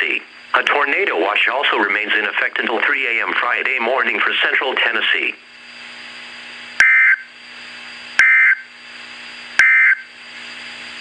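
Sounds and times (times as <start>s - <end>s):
faint radio hum: 0.0s - 10.8s
harsh digital data burst: 6.8s - 7.3s, 8.2s - 8.7s, 9.6s - 10.1s.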